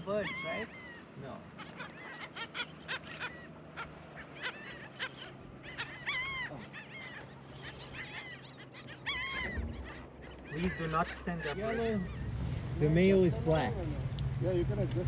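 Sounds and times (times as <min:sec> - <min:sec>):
wild birds calling: 0:00.0 - 0:15.0
steady low hum: 0:09.1 - 0:15.0.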